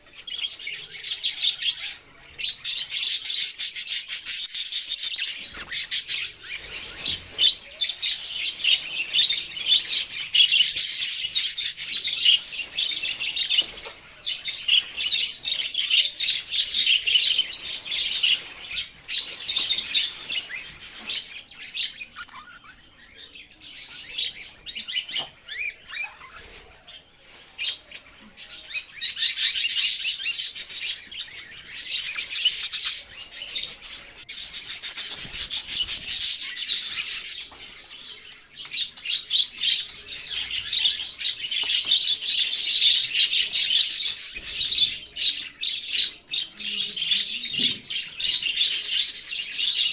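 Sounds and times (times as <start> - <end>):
budgerigar chattering: 21.8 - 22.8.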